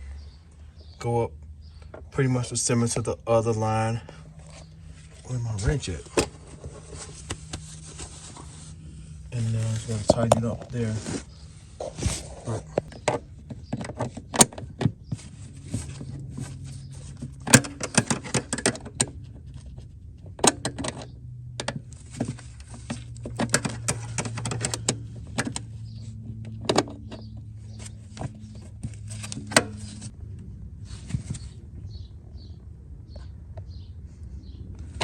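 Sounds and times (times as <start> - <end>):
low steady hum: 0.0 - 35.0.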